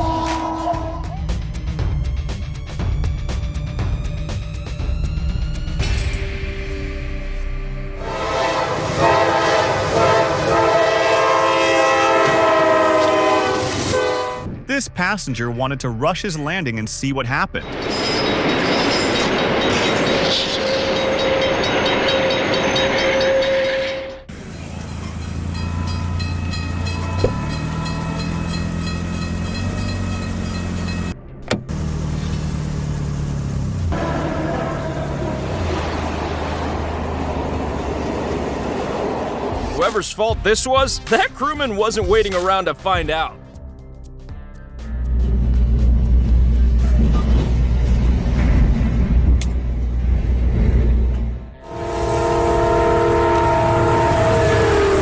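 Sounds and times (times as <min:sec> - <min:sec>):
train horn blast: 0:00.0 - 0:01.2, 0:08.0 - 0:14.6, 0:20.5 - 0:24.3, 0:34.0 - 0:36.2, 0:51.6 - 0:55.0
low rumble of train: 0:00.0 - 0:14.7, 0:17.6 - 0:40.1, 0:44.8 - 0:55.0
vehicle engine humming: 0:17.6 - 0:39.8, 0:44.8 - 0:52.6.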